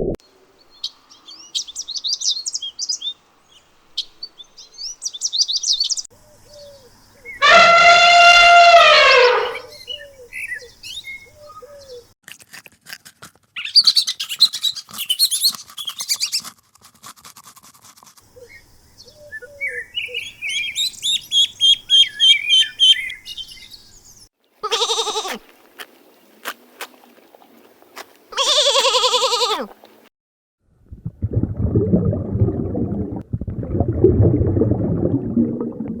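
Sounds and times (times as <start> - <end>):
animal call falling in pitch: 7.4 - 9.7
bird chirping and twittering: 13.6 - 16.5, 18.4 - 24.3
low rough rumbling: 30.8 - 36.0.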